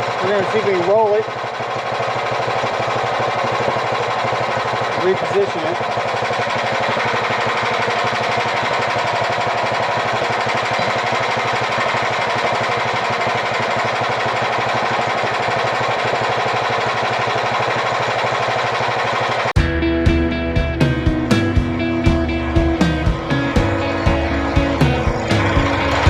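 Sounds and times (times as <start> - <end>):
engine running with fast pulse: 0.0 - 26.0
guitar music: 19.6 - 26.0.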